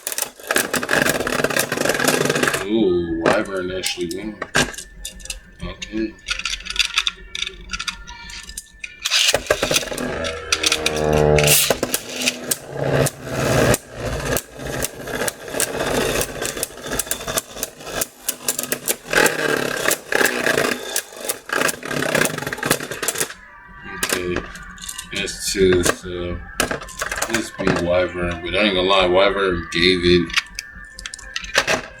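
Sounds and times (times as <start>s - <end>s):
plastic tops clashing rattle: 0.0s - 2.7s, 3.3s - 23.4s, 24.0s - 26.0s, 26.6s - 27.9s, 30.3s - 32.0s
spinning tops launched with whir: 8.3s - 23.4s.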